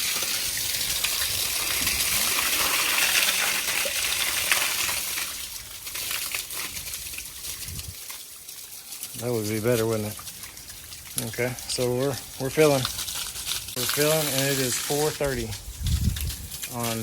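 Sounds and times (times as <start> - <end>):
water gushing into pool: 0.0 - 17.0.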